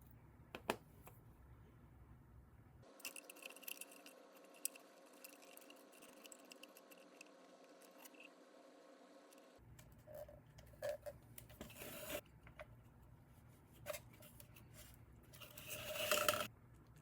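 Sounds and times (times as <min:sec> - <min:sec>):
faint small clicks and scratches: 0:03.0 - 0:08.3.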